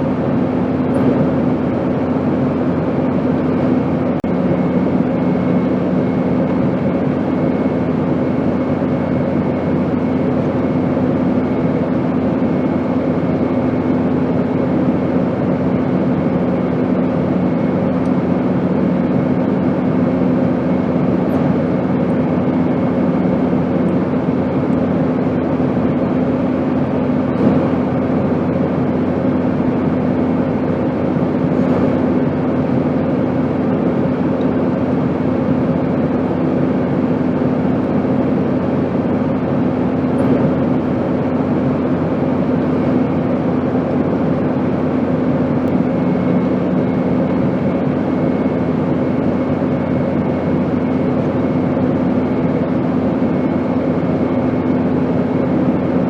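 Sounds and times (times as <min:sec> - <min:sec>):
airplane cabin drone: 0:00.0 - 0:56.0.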